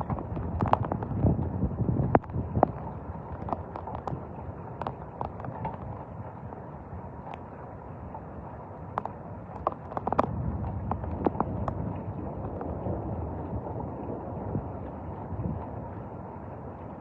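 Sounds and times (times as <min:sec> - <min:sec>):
sharp taps and cracks: 0:00.0 - 0:01.3, 0:02.1 - 0:04.2, 0:04.8 - 0:05.9, 0:09.0 - 0:11.8
rain and wind rushing: 0:00.0 - 0:17.0.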